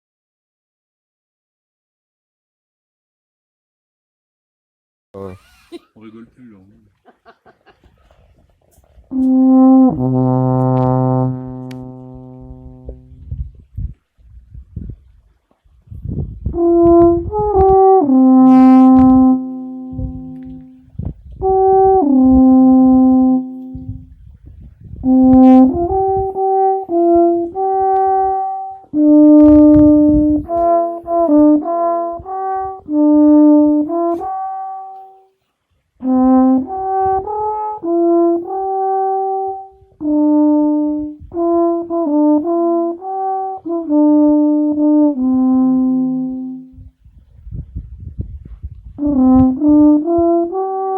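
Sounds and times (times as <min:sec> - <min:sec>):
alphorn playing slow melody: 0:09.1 - 0:13.3, 0:16.6 - 0:24.1, 0:25.0 - 0:35.2, 0:36.0 - 0:46.8, 0:49.0 - 0:50.9.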